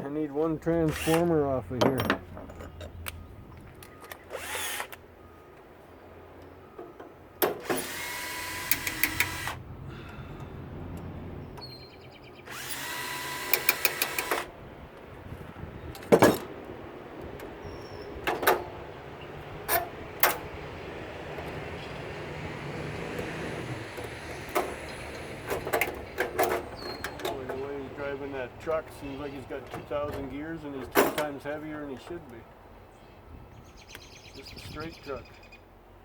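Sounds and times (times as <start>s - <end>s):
power drill whining: 0.9s - 1.3s, 4.3s - 5.0s, 7.6s - 9.6s, 12.5s - 14.5s.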